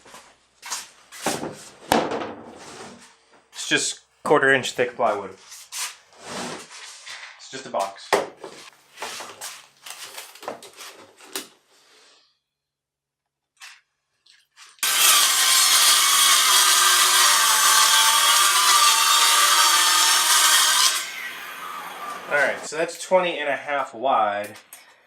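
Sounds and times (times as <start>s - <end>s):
plywood knocks and rubs: 1.2s - 3.0s
power saw cutting plywood: 14.8s - 22.7s.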